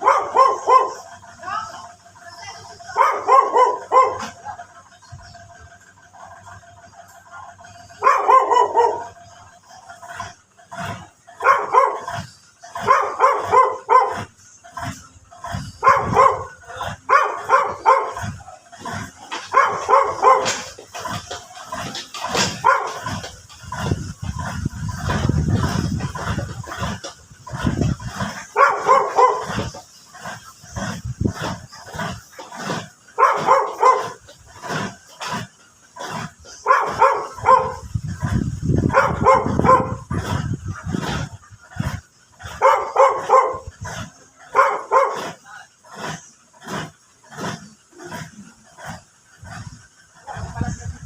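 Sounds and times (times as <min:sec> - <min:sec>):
dog barking: 0:00.0 - 0:01.1, 0:02.9 - 0:04.4, 0:07.9 - 0:09.2, 0:10.8 - 0:25.2, 0:27.6 - 0:29.7, 0:31.9 - 0:34.8, 0:36.1 - 0:37.9, 0:38.9 - 0:41.2, 0:41.8 - 0:45.4.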